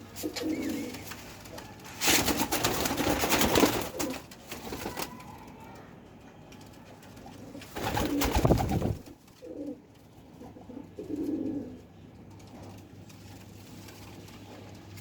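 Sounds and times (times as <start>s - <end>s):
pigeon cooing: 10.4s - 11.8s.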